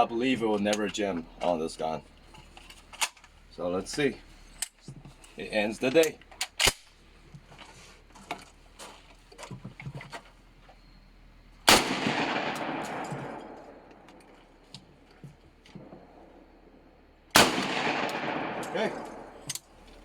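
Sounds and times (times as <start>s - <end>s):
shotgun shot echoing: 11.7s - 14.0s, 17.3s - 19.5s.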